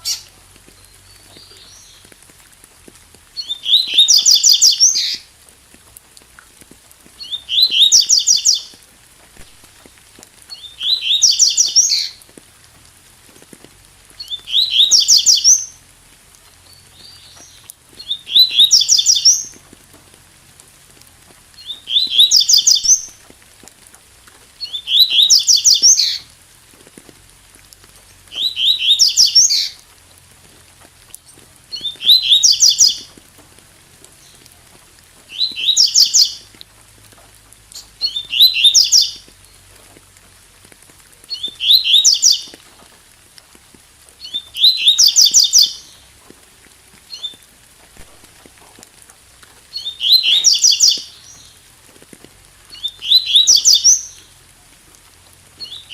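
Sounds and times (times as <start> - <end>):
faint steady hiss: 0.0 - 55.9
bird singing rapid chirps: 3.4 - 5.2, 7.2 - 8.8, 10.5 - 12.2, 14.2 - 15.8, 16.6 - 19.5, 21.6 - 23.1, 24.6 - 26.2, 28.4 - 29.8, 31.7 - 33.1, 35.3 - 36.5, 37.8 - 39.2, 41.3 - 42.6, 44.2 - 46.0, 49.7 - 51.6, 52.7 - 54.2.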